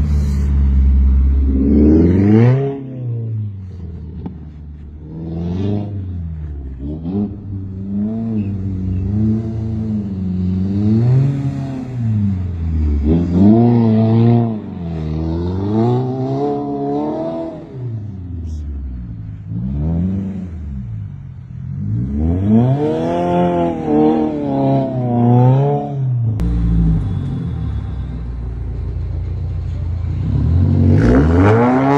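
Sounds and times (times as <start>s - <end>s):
low steady rumble: 0.0s - 10.8s, 26.3s - 31.3s
car engine revving: 0.0s - 31.9s.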